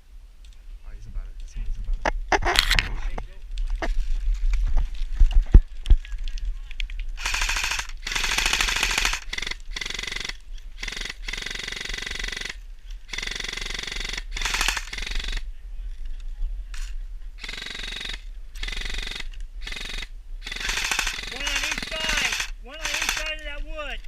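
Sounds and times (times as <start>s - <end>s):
airsoft guns firing full auto: 7.2s - 15.4s, 17.4s - 23.4s.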